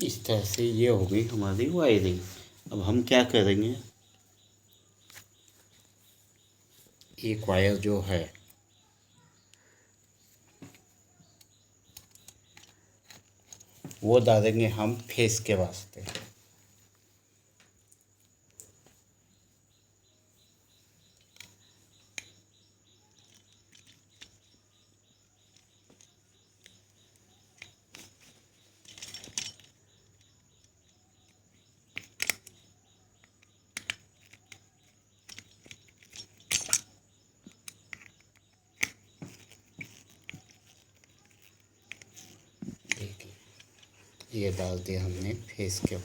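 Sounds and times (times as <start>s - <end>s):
small clicks taps and scrapes: 4.1s - 7.2s, 9.5s - 14.0s, 21.0s - 44.4s.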